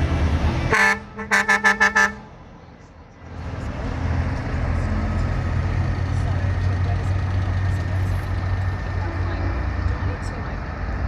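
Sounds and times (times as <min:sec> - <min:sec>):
rumble of vehicle engines: 0:00.0 - 0:11.0
truck horn blasts and toots: 0:00.7 - 0:02.3.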